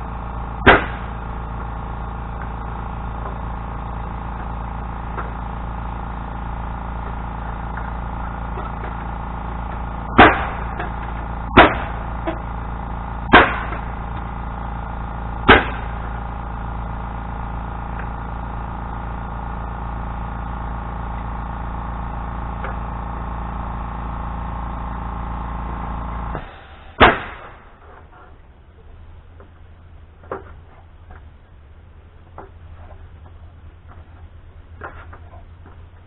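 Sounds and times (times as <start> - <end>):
steady machine hum: 0.0 - 36.0
sharp strikes: 0.6 - 1.2, 10.1 - 10.9, 11.5 - 12.4, 13.3 - 13.9, 15.4 - 16.0.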